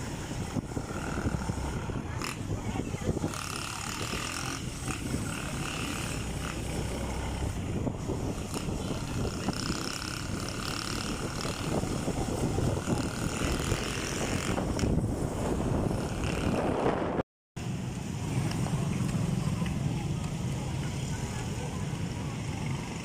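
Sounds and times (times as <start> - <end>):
wind on microphone: 0.0 - 17.2
road noise: 0.0 - 23.0
motorcycle engine running: 0.2 - 16.8.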